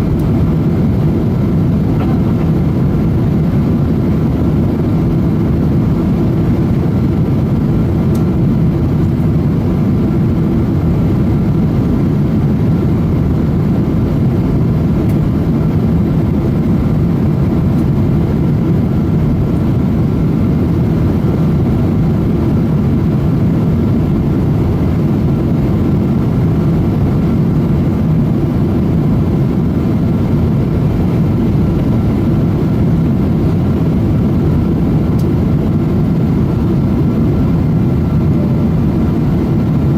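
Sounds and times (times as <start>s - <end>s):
airliner cabin rush: 0.0s - 5.2s.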